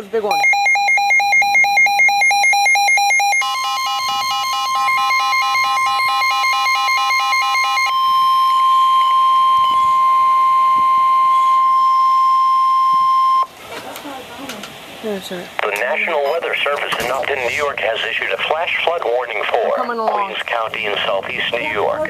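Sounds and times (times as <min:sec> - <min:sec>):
rapid pulsing electronic beeps: 0:00.3 - 0:13.5
steady high alarm tone: 0:00.3 - 0:13.5.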